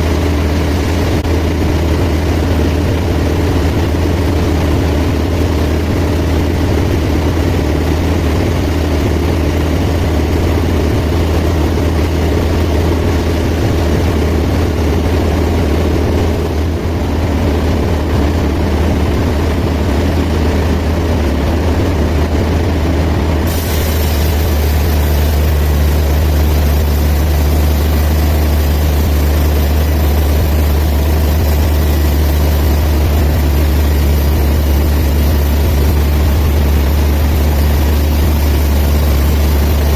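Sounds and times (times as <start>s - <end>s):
band sawmill machine hum: 0.0s - 39.9s
second machine hum: 23.4s - 39.9s
high hiss: 23.5s - 39.9s.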